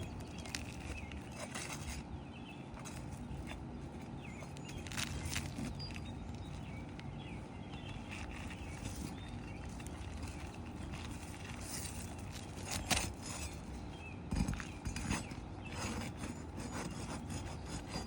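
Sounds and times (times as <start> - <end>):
low background hum: 0.0 - 18.0
shingles being pried on roof: 8.0 - 13.7.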